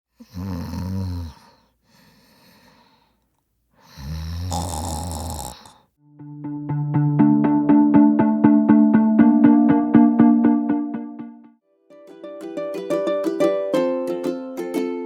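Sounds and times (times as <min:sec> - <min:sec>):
woman snoring: 0:00.2 - 0:02.9, 0:03.8 - 0:05.9
soft breath: 0:01.2 - 0:04.8
electronic music: 0:06.0 - 0:11.6.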